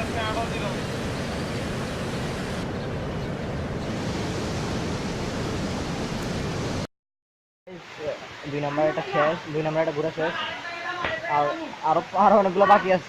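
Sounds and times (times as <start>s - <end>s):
waterfall rushing: 0.0s - 2.7s, 7.7s - 13.0s.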